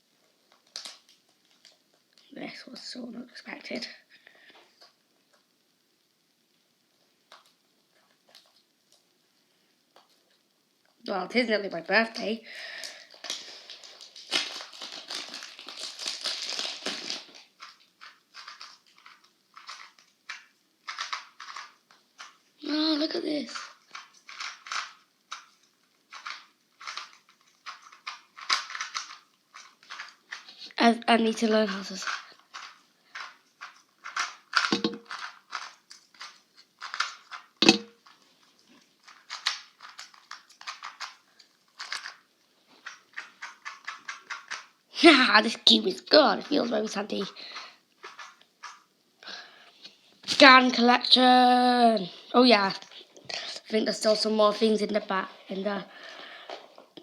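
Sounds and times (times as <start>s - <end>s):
packaging rustling and crinkling: 12.8s - 22.4s, 23.4s - 30.7s, 31.5s - 44.7s
plastic puzzle cube clicking: 12.8s - 22.4s, 23.5s - 30.5s, 31.7s - 38.2s, 39.0s - 42.2s, 42.8s - 44.8s, 47.2s - 48.9s.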